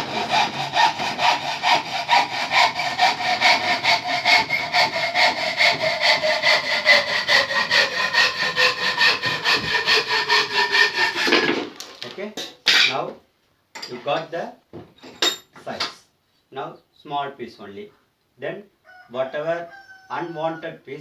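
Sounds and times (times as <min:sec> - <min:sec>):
hacksaw cutting wood: 0:00.0 - 0:11.8.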